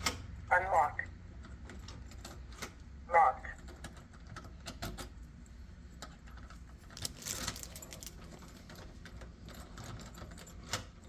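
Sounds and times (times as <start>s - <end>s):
keys jangling: 6.9s - 10.9s.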